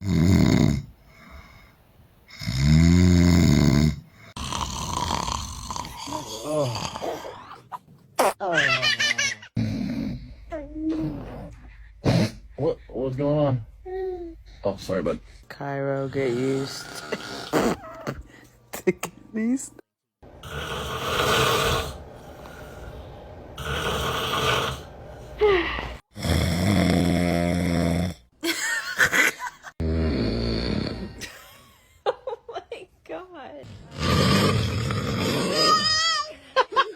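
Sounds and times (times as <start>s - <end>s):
man snoring: 0.0s - 1.6s, 2.3s - 7.5s, 9.6s - 10.4s, 16.0s - 18.2s, 20.4s - 28.3s, 29.8s - 31.3s, 33.7s - 35.9s.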